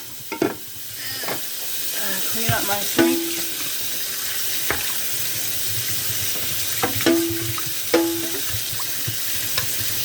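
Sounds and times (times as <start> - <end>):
tap running into sink: 2.4 - 3.8, 4.6 - 5.1, 5.9 - 10.0
dishware knocking against sink: 2.5 - 3.5, 6.8 - 8.5.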